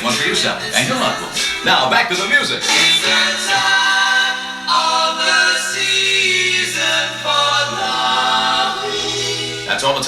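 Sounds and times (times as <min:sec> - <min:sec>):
choir singing harmonised chords: 0:00.0 - 0:10.0.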